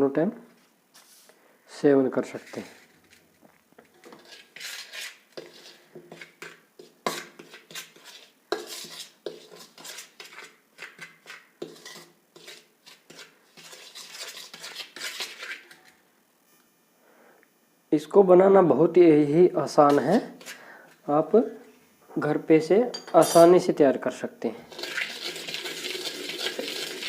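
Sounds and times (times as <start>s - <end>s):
utensil scraping a dish: 3.9s - 15.9s, 24.7s - 27.0s.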